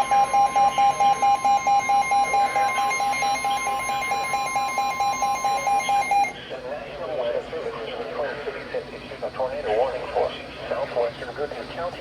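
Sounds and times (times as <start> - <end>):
rapid pulsed beeping alarm: 0.0 - 6.3
steady high warning tone: 0.0 - 6.5.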